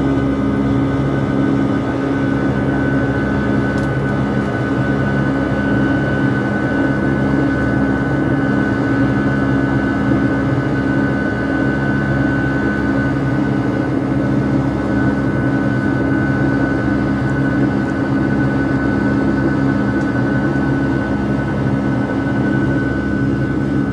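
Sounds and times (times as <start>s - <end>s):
jet cabin engine drone: 0.0s - 23.9s.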